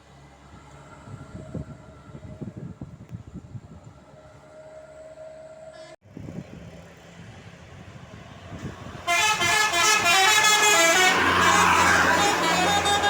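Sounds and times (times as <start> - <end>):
engine and traffic hum: 0.0 - 5.2, 6.0 - 13.0
bus musical horn: 5.3 - 6.0, 8.6 - 13.0.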